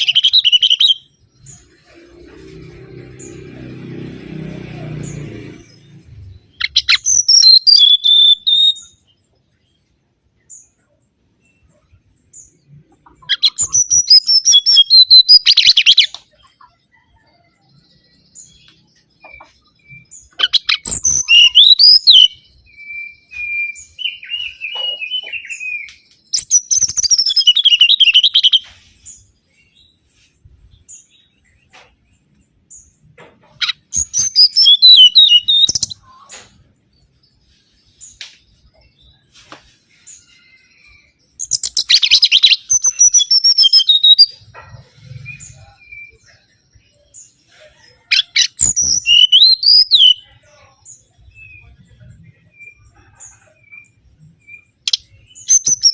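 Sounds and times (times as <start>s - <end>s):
bird chattering notes: 0.0s - 2.1s.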